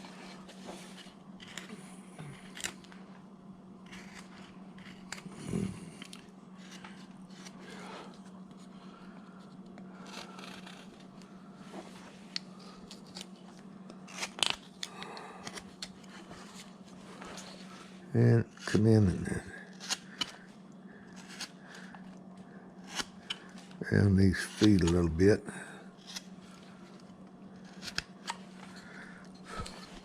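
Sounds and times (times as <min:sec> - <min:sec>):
steady low hum: 0:00.0 - 0:30.0
carving knife cutting wood: 0:01.4 - 0:02.9, 0:03.8 - 0:07.6, 0:09.9 - 0:11.2, 0:14.0 - 0:16.7, 0:19.6 - 0:22.0, 0:22.8 - 0:23.6, 0:24.4 - 0:25.0, 0:26.0 - 0:26.6, 0:27.5 - 0:30.0.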